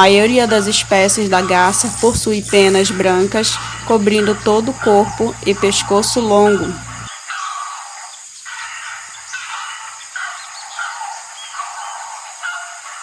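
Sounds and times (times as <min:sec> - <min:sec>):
heron calling: 0:00.0 - 0:07.1
steady hiss: 0:00.0 - 0:09.4.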